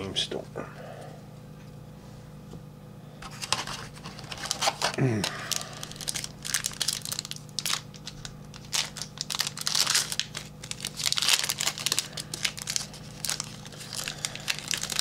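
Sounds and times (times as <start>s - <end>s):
crinkling wrappers and sliding cards: 3.2s - 15.0s.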